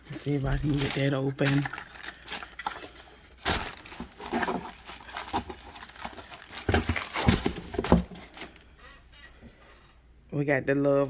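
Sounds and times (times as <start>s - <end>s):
packaging crinkling and tearing: 0.0s - 8.6s.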